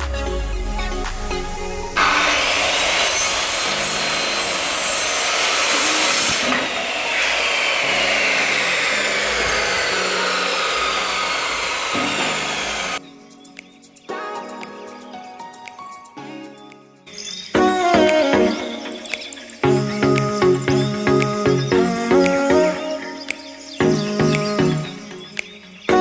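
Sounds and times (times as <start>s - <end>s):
power saw cutting wood: 1.9s - 13.0s.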